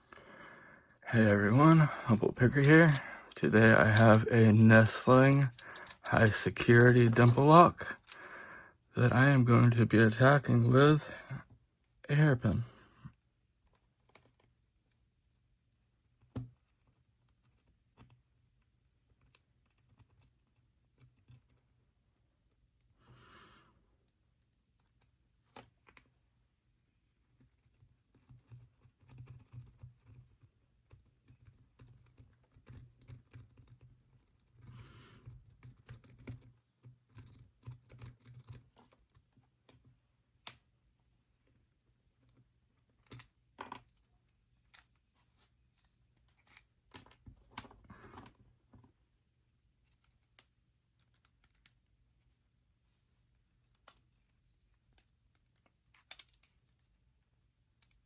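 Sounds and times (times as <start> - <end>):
lock picking clicks and scraping: 1.0 - 3.1, 3.8 - 8.2, 55.9 - 56.6.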